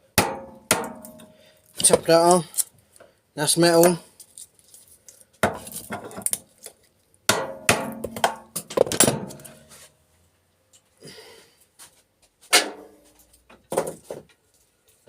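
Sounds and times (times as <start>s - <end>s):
metallic knocks and clangs: 7.3s - 9.6s.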